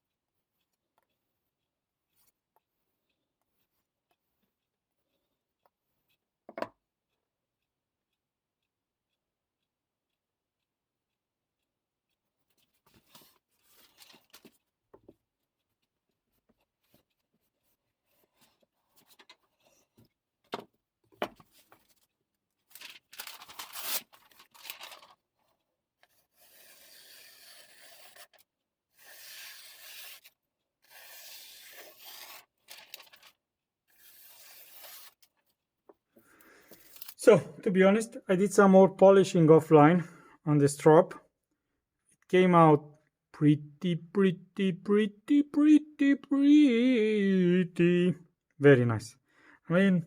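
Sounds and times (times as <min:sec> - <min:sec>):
blade rubbing strokes: 0:26.2 - 0:33.3, 0:33.9 - 0:35.3.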